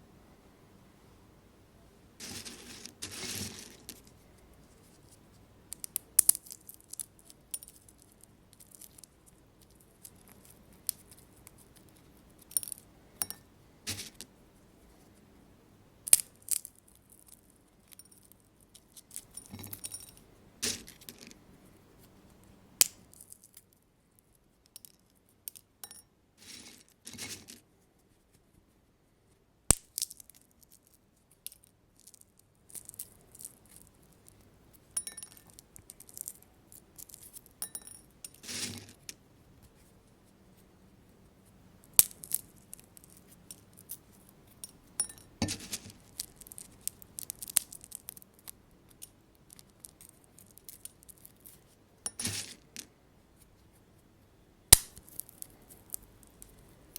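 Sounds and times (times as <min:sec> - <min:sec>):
sunflower seed shells cracking: 0:05.7 - 0:11.6, 0:41.9 - 0:44.3, 0:45.6 - 0:51.6, 0:54.7 - 0:56.6
shells clinking into glass bowl: 0:35.0 - 0:35.6, 0:44.6 - 0:46.6, 0:52.1 - 0:52.8.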